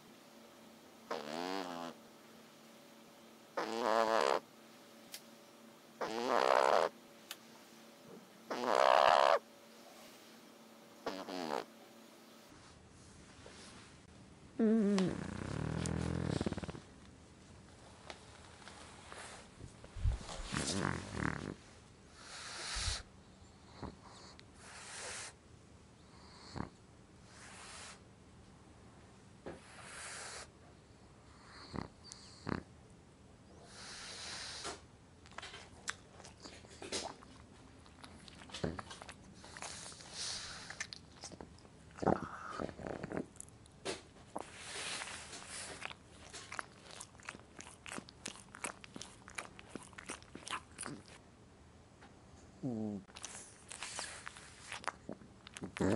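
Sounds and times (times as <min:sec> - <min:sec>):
dog snoring breaths: 0:01.1 - 0:02.0, 0:03.6 - 0:04.4, 0:06.0 - 0:06.9, 0:08.5 - 0:09.4, 0:11.0 - 0:11.7, 0:14.6 - 0:16.9, 0:20.2 - 0:25.4, 0:26.0 - 0:28.0, 0:29.6 - 0:32.7, 0:33.6 - 0:34.9, 0:38.2 - 0:41.0, 0:41.9 - 0:43.4, 0:44.3 - 0:49.1, 0:52.6 - 0:55.9
dog snorting: 0:01.1 - 0:02.0, 0:03.6 - 0:04.4, 0:06.0 - 0:06.9, 0:08.5 - 0:09.4, 0:11.0 - 0:11.7, 0:14.6 - 0:16.9, 0:20.4 - 0:21.6, 0:36.2 - 0:43.5, 0:44.3 - 0:51.2, 0:52.6 - 0:55.9.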